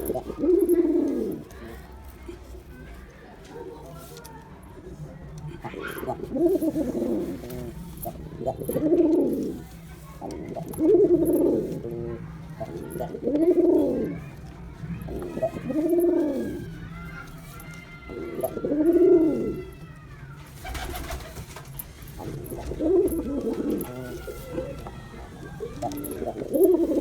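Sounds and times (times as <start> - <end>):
pigeon cooing: 0.0 - 1.8, 5.6 - 9.6, 10.2 - 14.3, 15.0 - 16.7, 18.1 - 19.6, 22.2 - 27.0.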